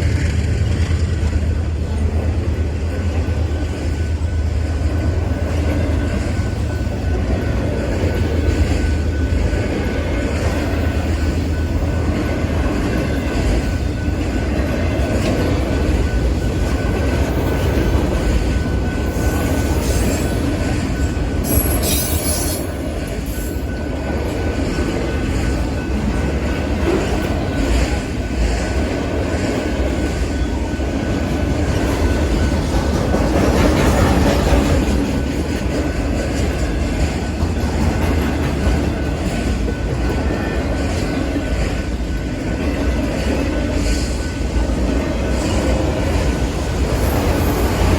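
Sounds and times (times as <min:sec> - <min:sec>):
train wheels rumbling on rail: 0:00.0 - 0:47.9
high wheel squeal: 0:19.0 - 0:23.7, 0:46.9 - 0:47.9.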